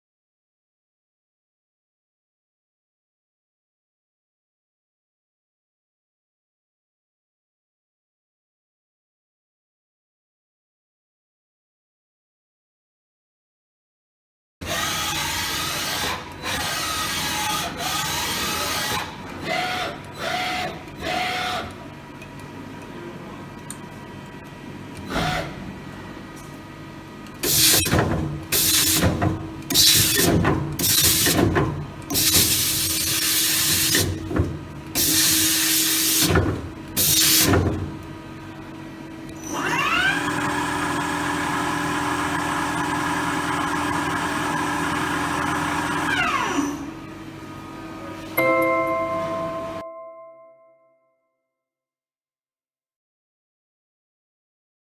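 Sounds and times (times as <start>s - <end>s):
machine whining: 39.2s - 47.3s.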